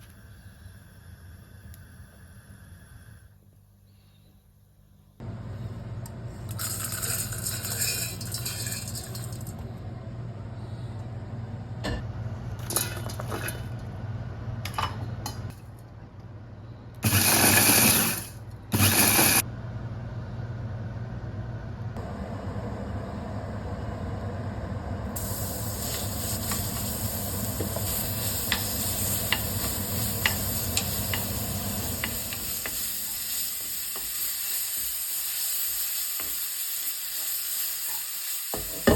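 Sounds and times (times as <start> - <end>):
steady low hum: 0.0 - 17.4, 19.4 - 33.2
food sizzling in a pan: 25.2 - 38.9.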